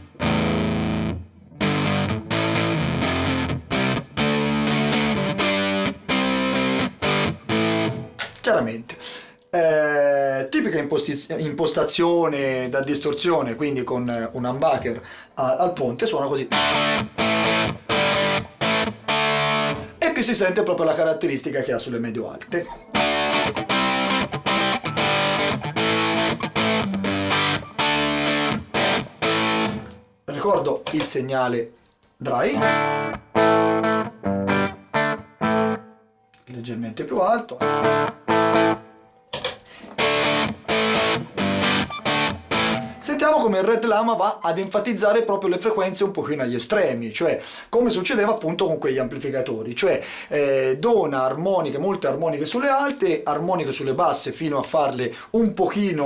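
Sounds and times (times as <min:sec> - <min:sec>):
distorted electric guitar chords: 0:00.0 - 0:08.2, 0:16.5 - 0:20.0, 0:22.8 - 0:30.2, 0:32.6 - 0:36.0, 0:37.6 - 0:43.1.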